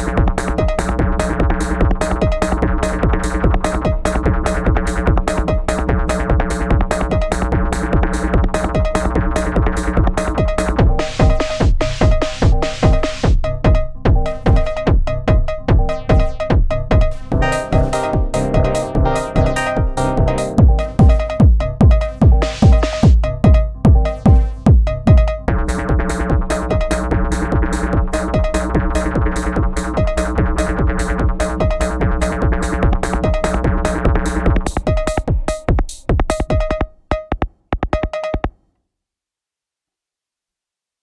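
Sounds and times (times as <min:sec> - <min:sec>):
fast rhythmic electronic hits: 0:00.0 - 0:38.6
kick drum: 0:00.0 - 0:38.6
sustained synth chord: 0:17.3 - 0:25.8.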